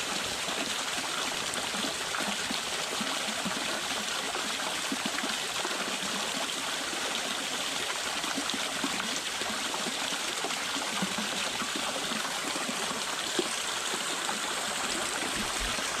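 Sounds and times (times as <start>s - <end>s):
water gurgling and splashing: 0.0s - 16.0s
waterfall stream rushing: 12.6s - 16.0s.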